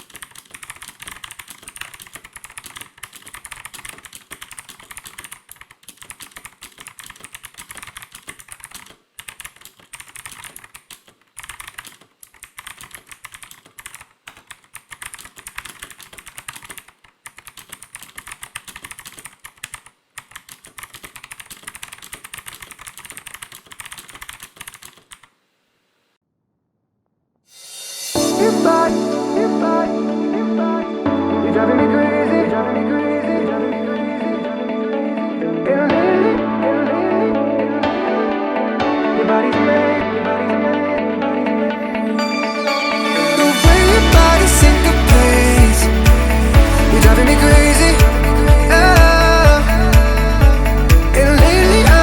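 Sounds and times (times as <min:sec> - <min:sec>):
mechanical keyboard typing: 0:00.0 - 0:25.3.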